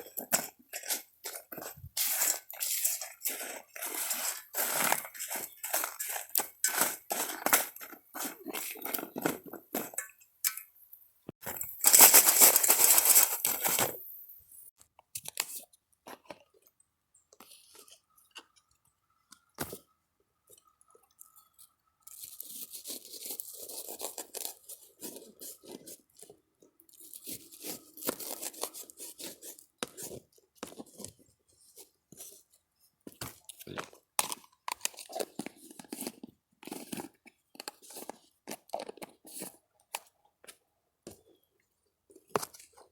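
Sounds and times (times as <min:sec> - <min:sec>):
packaging crinkling and tearing: 0:11.5 - 0:14.0.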